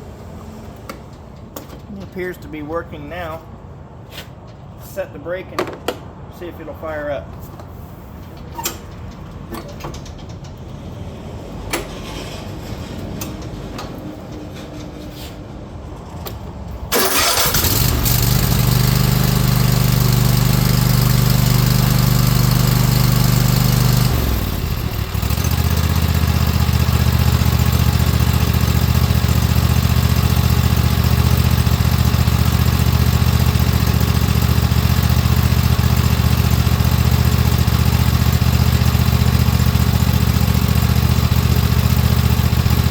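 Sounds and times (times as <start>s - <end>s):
lawn tractor engine running: 16.9s - 42.9s.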